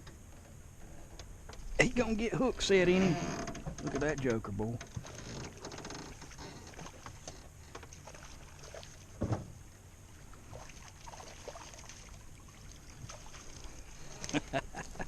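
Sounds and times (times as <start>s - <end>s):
dull thump: 9.2s - 9.6s.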